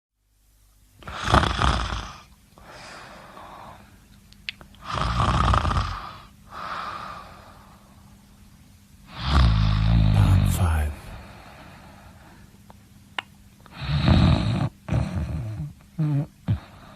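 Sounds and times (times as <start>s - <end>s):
soft breath: 2.6s - 4.0s
person snoring loudly: 9.1s - 11.3s.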